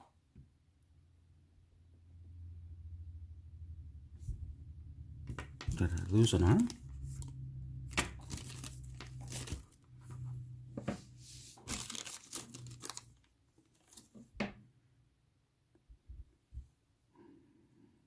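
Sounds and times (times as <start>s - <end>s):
plastic bags crinkling: 5.6s - 10.0s, 11.5s - 14.2s.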